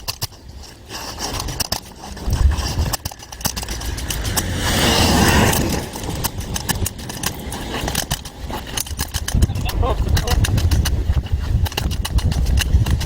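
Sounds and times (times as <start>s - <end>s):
scraping rush: 0.0s - 13.0s.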